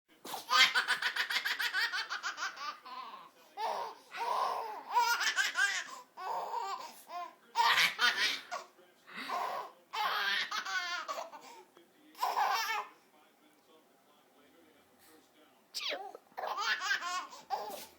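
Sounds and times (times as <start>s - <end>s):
baby laughing: 0.3s - 8.7s, 9.3s - 11.5s, 12.2s - 12.9s, 15.8s - 17.9s.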